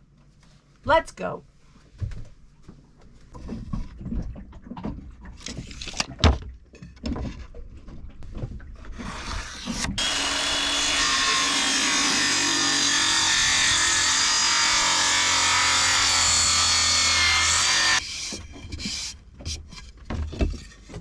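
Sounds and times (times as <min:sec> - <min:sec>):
loud continuous sound: 0:10.0 - 0:18.0
items and boards clattering: 0:18.3 - 0:21.0.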